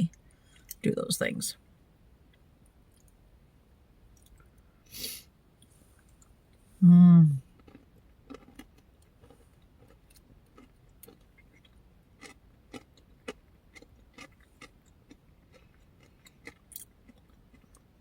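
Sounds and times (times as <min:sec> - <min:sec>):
person chewing crunchy food: 0:07.5 - 0:17.9.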